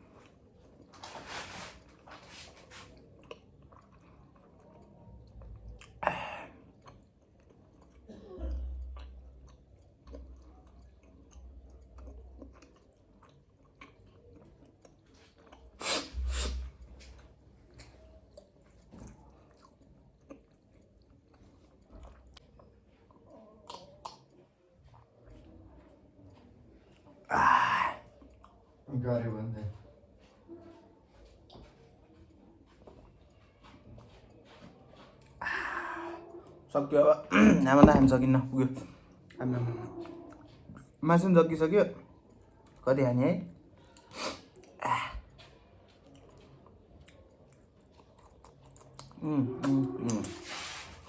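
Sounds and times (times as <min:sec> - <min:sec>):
chewing: 0:00.0 - 0:28.9, 0:29.8 - 0:36.7, 0:38.9 - 0:41.0, 0:41.9 - 0:51.0
soft mouth clicks: 0:23.6 - 0:24.4, 0:48.7 - 0:50.8.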